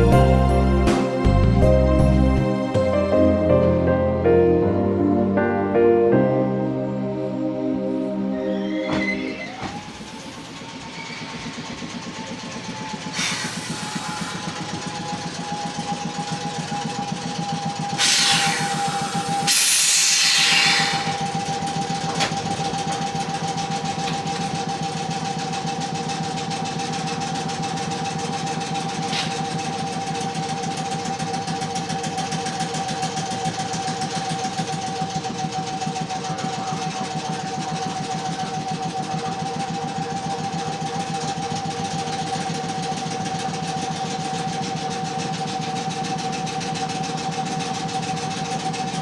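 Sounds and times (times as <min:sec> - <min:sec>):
train machinery whine: 0:00.0 - 0:49.0
loud air hisses: 0:13.0 - 0:15.8, 0:17.9 - 0:22.0.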